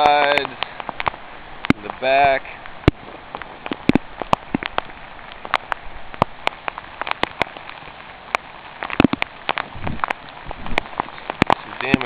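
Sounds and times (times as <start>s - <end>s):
rain pattering: 0.0s - 12.0s.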